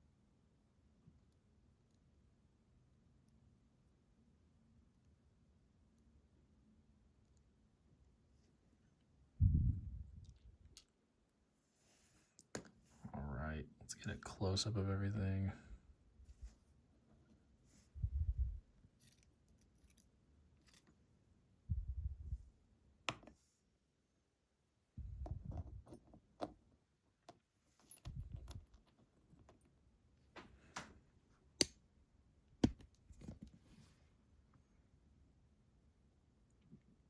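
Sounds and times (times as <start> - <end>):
metal lock parts clicking: 27.3 - 29.7.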